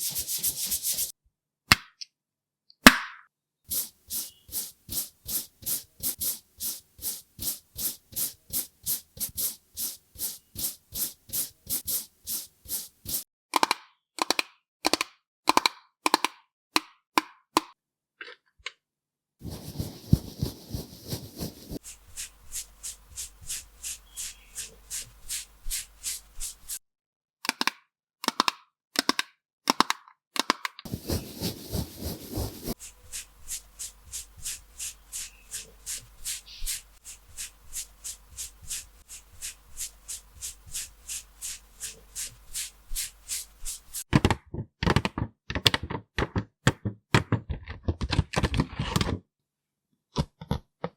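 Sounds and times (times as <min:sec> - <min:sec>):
faint steady hiss: 0:03.7 - 0:13.2, 0:19.4 - 0:26.8, 0:30.9 - 0:44.1.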